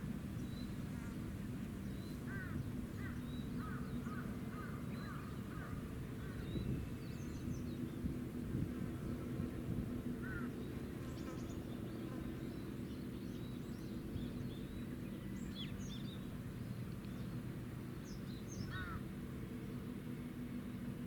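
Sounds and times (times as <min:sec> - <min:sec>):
birds chirping: 0:10.2 - 0:17.4, 0:18.0 - 0:19.0.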